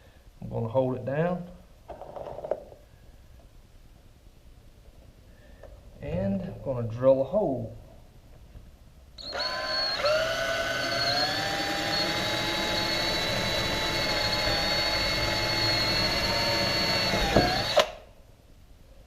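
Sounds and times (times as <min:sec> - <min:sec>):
electric drill whining: 0:09.2 - 0:18.0.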